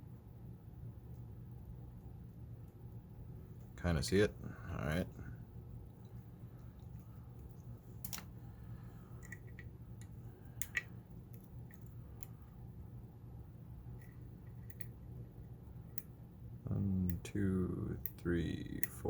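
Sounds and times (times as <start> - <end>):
low hum: 0.0 - 19.0.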